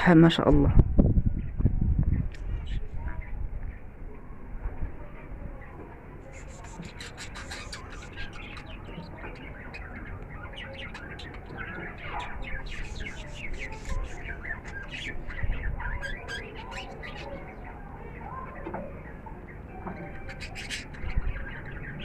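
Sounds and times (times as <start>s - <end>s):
finches chirping: 6.2s - 22.0s.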